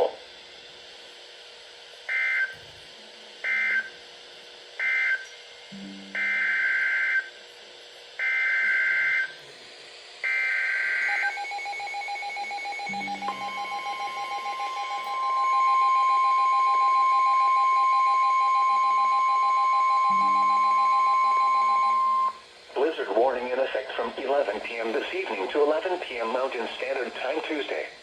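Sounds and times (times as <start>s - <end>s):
steady attention tone: 5.7s - 7.3s, 10.4s - 25.4s.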